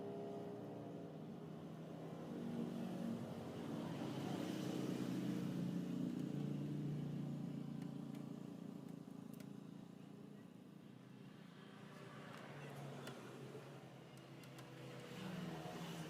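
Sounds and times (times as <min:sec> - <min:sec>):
faint vehicle engine passing: 0:01.7 - 0:08.8, 0:11.2 - 0:16.0.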